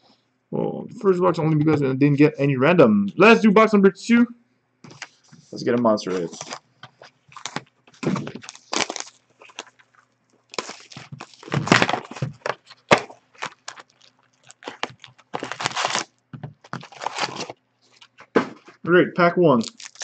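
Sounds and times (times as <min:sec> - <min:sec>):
plastic wrap and cardboard rustling: 0:04.9 - 0:18.9, 0:19.5 - 0:20.0.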